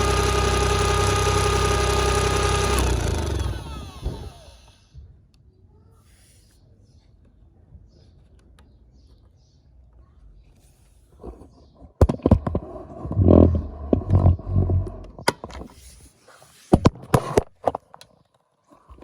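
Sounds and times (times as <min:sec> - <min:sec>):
toy washing machine motor whine: 0:00.0 - 0:04.9
plastic knocks and rattles: 0:12.0 - 0:15.7.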